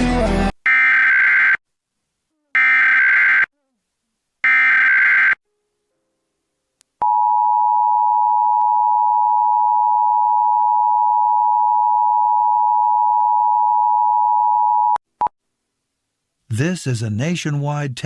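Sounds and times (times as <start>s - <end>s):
two-tone alarm tone: 0.7s - 1.6s, 2.6s - 3.5s, 4.4s - 5.4s.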